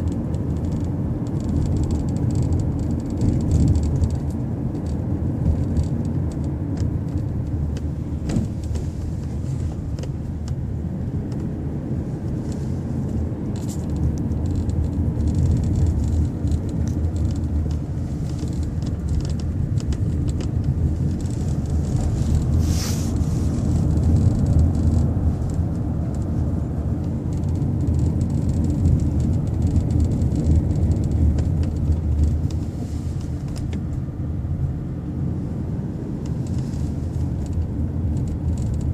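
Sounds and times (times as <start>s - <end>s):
road and engine rumble: 0.0s - 38.9s.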